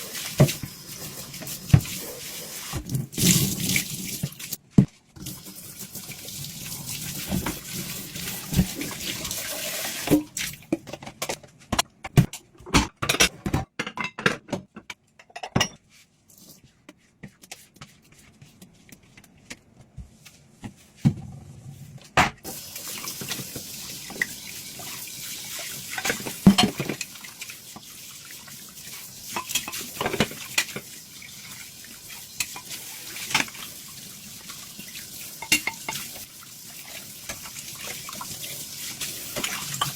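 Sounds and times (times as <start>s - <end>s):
tap water running: 0.0s - 4.6s, 5.2s - 10.7s, 22.5s - 39.9s
dishes and cutlery clinking: 12.7s - 15.9s, 35.4s - 36.1s.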